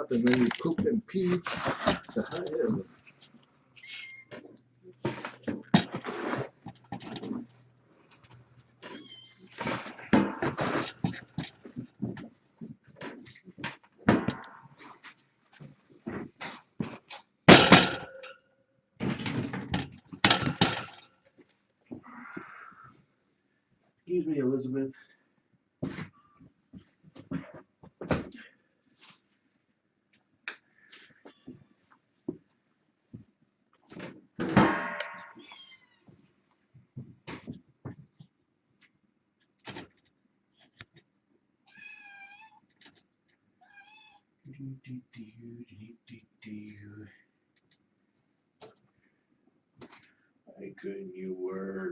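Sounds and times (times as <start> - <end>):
scoop scraping through litter: 6.0 - 6.5
kitten meowing: 8.9 - 9.5, 35.3 - 36.0, 41.7 - 42.6.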